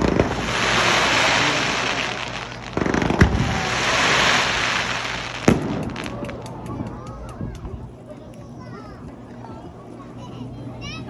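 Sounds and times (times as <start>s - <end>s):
fireworks hiss: 0.0s - 6.2s
fireworks bangs: 0.0s - 6.6s
fireworks crackling: 0.0s - 7.9s.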